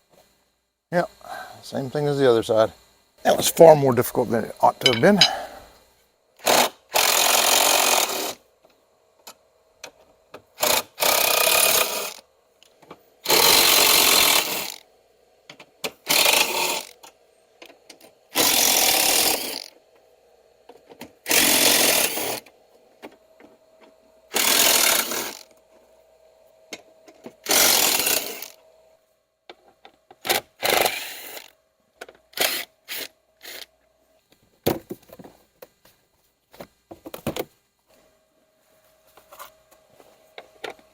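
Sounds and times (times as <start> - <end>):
faint steady hum: 0.0 - 30.6, 31.2 - 40.9
handheld power tool bursts: 6.4 - 8.4, 10.6 - 12.2, 13.2 - 14.8, 15.9 - 17.0, 18.3 - 19.7, 21.2 - 22.5, 24.3 - 25.5, 27.4 - 28.6, 30.2 - 31.5, 32.3 - 33.7.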